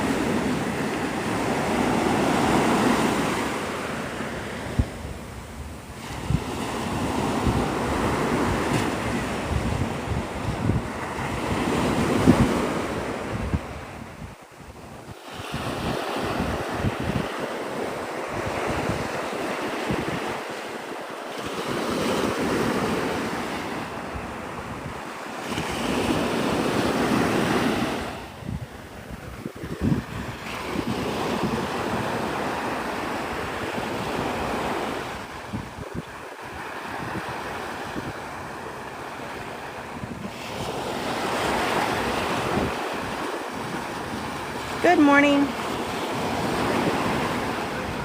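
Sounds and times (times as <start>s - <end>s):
wind buffeting microphone: 0.0s - 20.6s, 21.5s - 48.0s
surf washing onto beach: 0.0s - 48.0s.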